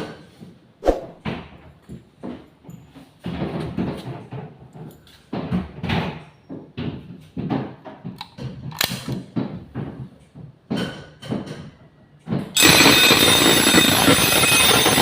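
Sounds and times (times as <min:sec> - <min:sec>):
fire alarm bell ringing: 0:12.6 - 0:15.0.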